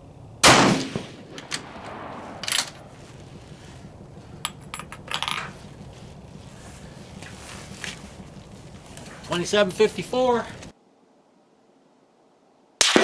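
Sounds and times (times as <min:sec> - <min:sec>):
rifle shot: 0:00.4 - 0:03.4, 0:12.8 - 0:13.0
metallic clicks and clinks: 0:04.4 - 0:05.6.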